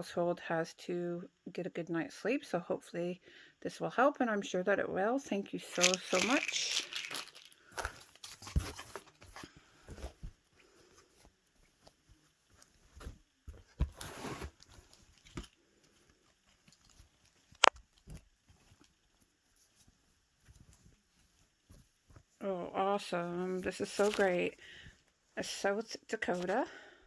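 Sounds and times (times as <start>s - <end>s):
packaging rustling: 5.6s - 10.2s, 23.8s - 24.5s.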